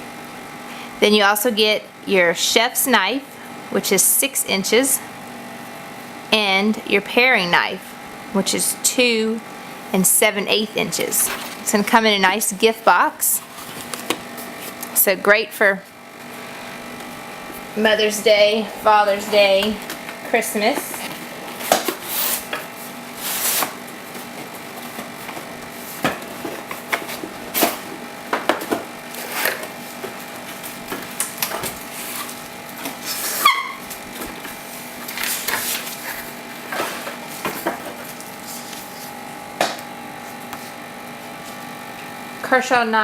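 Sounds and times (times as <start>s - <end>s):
short squeak falling in pitch: 33.4s - 33.8s.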